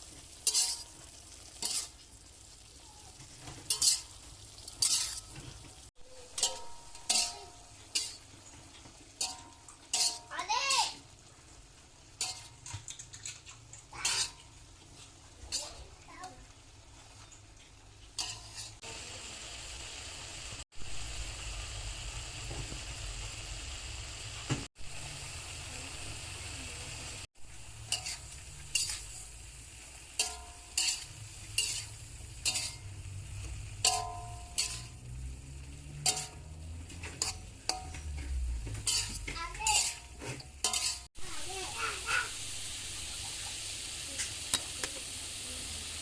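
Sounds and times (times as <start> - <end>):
stir-fry sizzling in hot oil: 0.0 - 46.0
spatula scraping and knocking pan: 0.4 - 1.0, 1.6 - 2.0, 3.2 - 10.7, 27.8 - 29.2, 30.2 - 35.3, 35.9 - 41.1.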